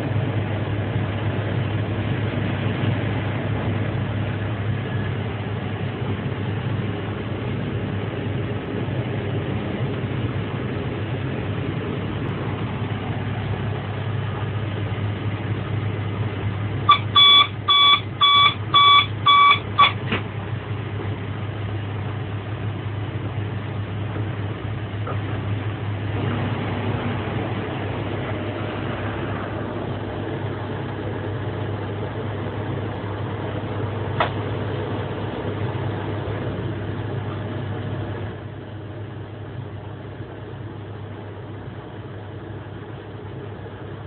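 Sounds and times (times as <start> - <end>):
train hum in cab: 0.0 - 44.0
short electronic warning beeps: 16.9 - 20.0.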